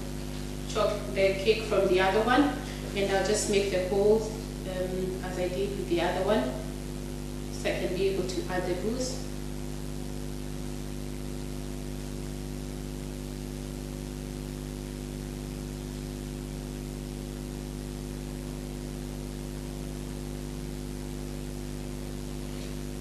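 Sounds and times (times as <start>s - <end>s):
low even hum: 0.0s - 23.0s.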